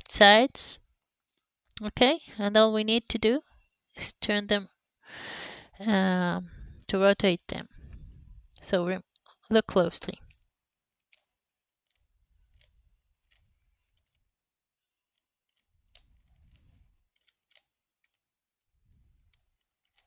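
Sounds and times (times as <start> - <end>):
soft handling noise: 15.0 - 20.0.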